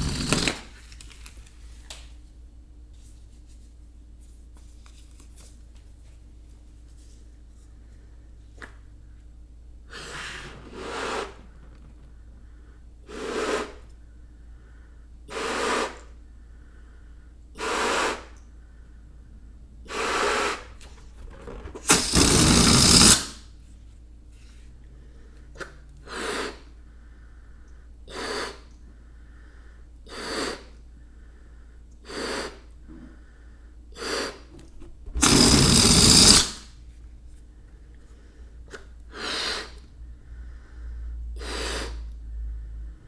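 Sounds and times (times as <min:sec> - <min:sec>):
air hissing from balloon: 0:00.0 - 0:00.8, 0:09.7 - 0:14.2, 0:15.3 - 0:16.2, 0:17.6 - 0:18.4, 0:19.8 - 0:23.6, 0:30.1 - 0:30.8, 0:32.0 - 0:32.7, 0:34.0 - 0:36.8, 0:39.1 - 0:39.8, 0:41.4 - 0:42.1.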